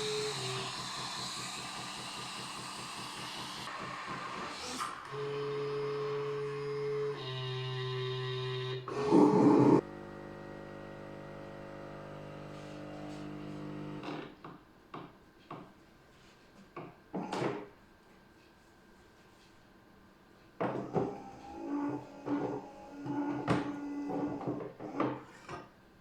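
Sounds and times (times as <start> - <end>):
coffee machine mechanical hum: 8.8 - 14.3.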